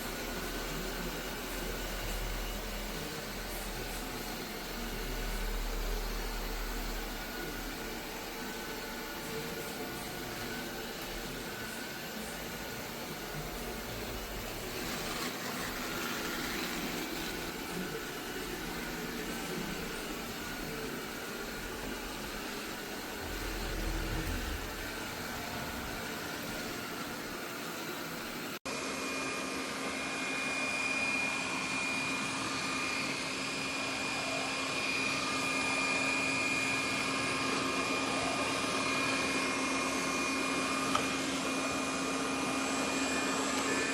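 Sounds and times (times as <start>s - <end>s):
robot vacuum motor hum: 0.0s - 28.6s.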